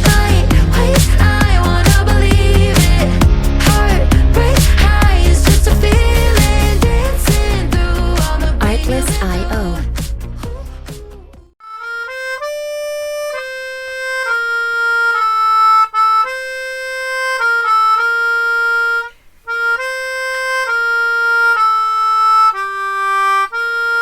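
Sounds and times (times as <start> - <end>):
solo harmonica melody: 11.6 - 24.0.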